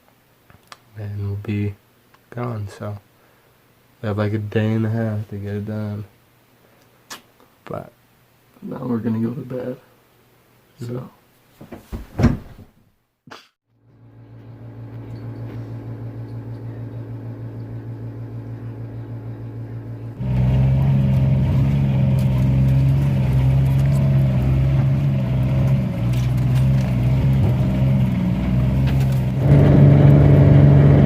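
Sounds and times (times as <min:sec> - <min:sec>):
vehicle engine running: 0:13.8 - 0:31.0.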